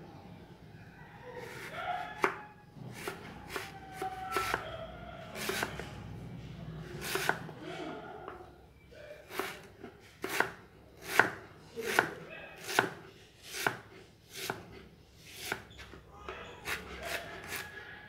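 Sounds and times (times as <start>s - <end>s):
knife chopping on board: 1.6s - 4.6s, 5.4s - 5.8s, 7.0s - 7.4s, 9.3s - 9.6s, 10.2s - 14.8s, 15.4s - 15.6s.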